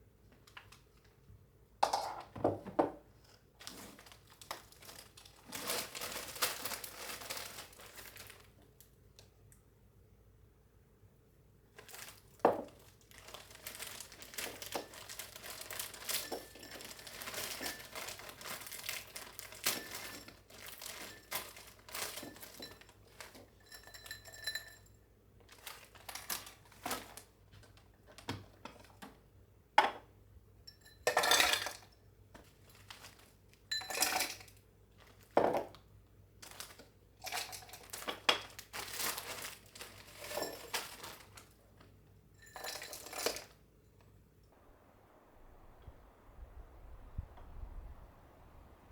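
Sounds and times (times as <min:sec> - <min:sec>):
crinkling and crackling: 0:03.2 - 0:09.3, 0:11.7 - 0:23.6, 0:25.4 - 0:29.1, 0:32.4 - 0:33.7, 0:34.9 - 0:48.9.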